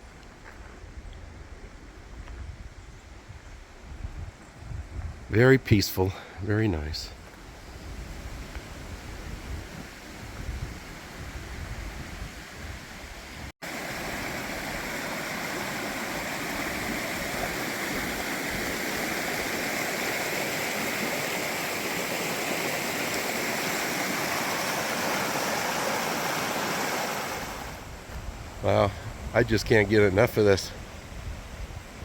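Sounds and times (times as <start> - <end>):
low wind rumble: 0.0 - 5.6, 6.2 - 19.4, 27.4 - 32.0
brook rushing over rocks: 13.6 - 27.8.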